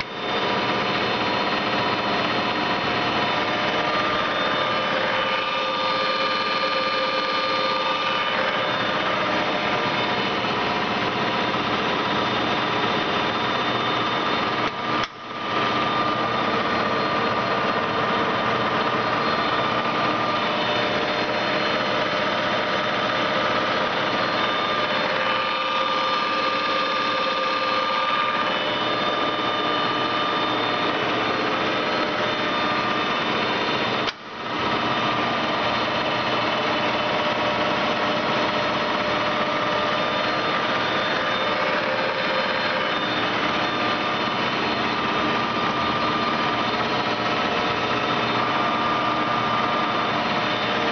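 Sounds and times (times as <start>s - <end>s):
gear whine: 0.0s - 50.9s
lathe running: 0.0s - 50.9s.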